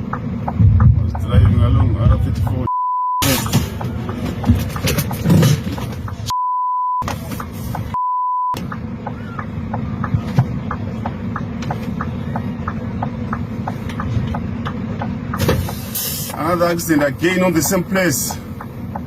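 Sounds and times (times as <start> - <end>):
low rumble: 0.0 - 6.4
censor bleep tone: 2.7 - 3.3, 6.3 - 7.0, 7.9 - 8.6.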